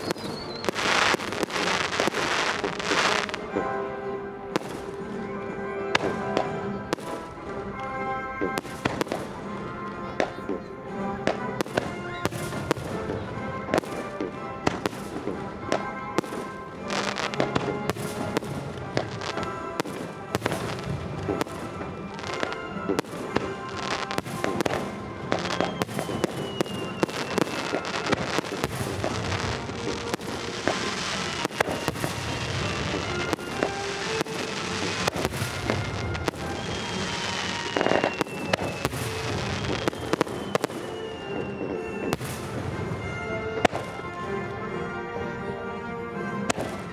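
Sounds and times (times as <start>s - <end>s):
fireworks whistles falling in pitch: 0.0s - 3.6s, 11.2s - 44.1s
fireworks bursting with bangs: 0.0s - 44.8s, 46.5s - 46.9s
background music: 0.0s - 46.9s.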